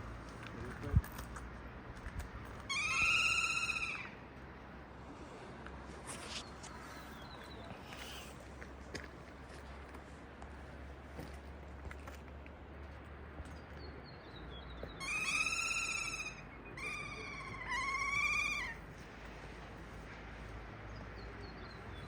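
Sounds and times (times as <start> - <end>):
parrot calling: 2.7 - 4.2, 15.0 - 18.8.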